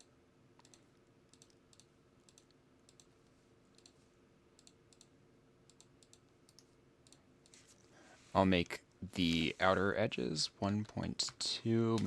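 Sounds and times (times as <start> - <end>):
computer mouse clicks: 0.0 - 4.0, 4.6 - 5.1, 5.7 - 7.6
faint low hum: 0.0 - 12.0.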